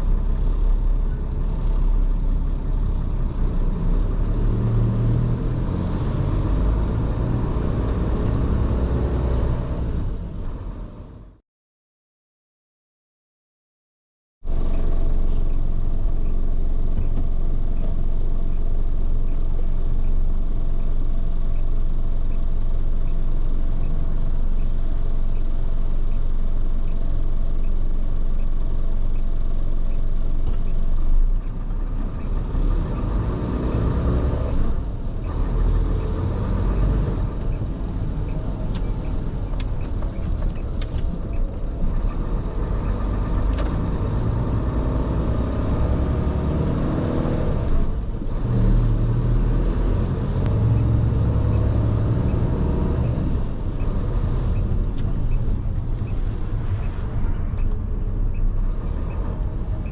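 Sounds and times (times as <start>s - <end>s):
heavy truck engine and road noise: 0.0s - 11.4s, 14.4s - 59.9s.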